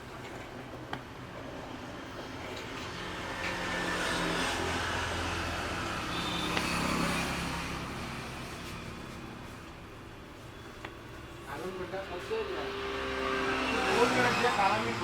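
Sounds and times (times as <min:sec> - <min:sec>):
vehicle passing: 0:02.8 - 0:09.4, 0:11.6 - 0:15.0.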